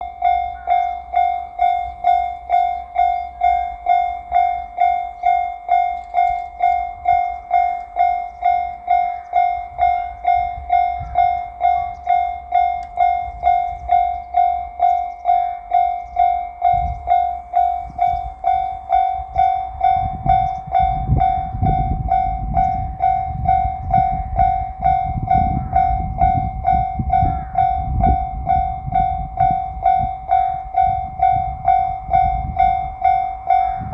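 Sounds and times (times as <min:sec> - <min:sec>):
electric train rumbling past: 0:00.0 - 0:33.9
level crossing alarm bell: 0:00.0 - 0:33.9.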